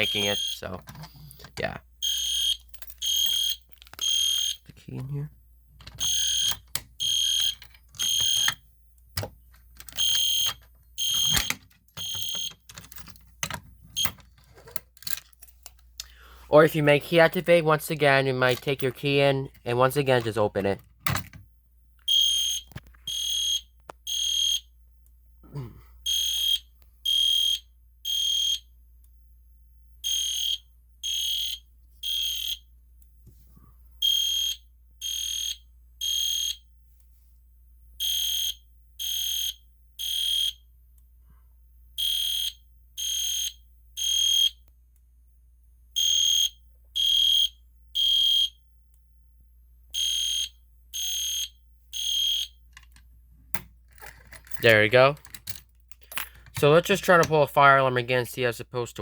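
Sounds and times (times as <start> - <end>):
fire alarm horn blasts: 0.0 - 0.7.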